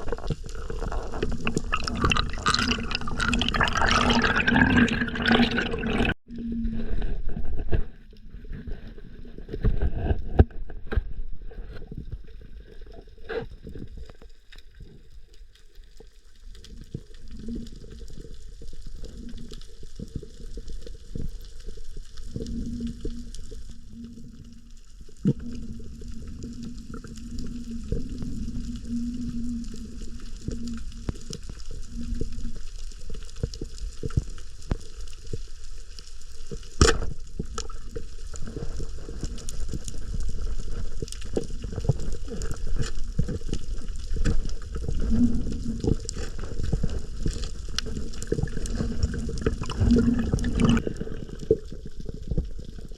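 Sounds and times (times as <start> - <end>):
muffled underwater rumble: 0.0 - 52.9.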